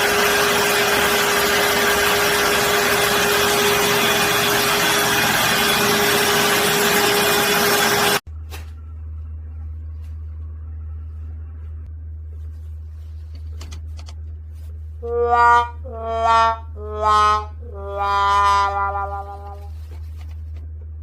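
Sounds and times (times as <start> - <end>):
machine motor rushing and whining: 0.0 - 8.2
low hum: 0.0 - 21.0.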